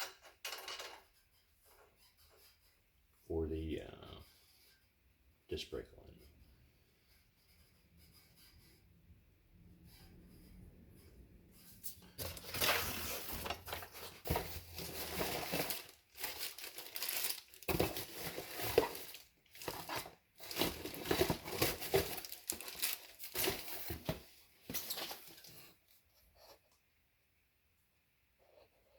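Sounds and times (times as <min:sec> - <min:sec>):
crinkling and rustling: 0:10.9 - 0:26.9.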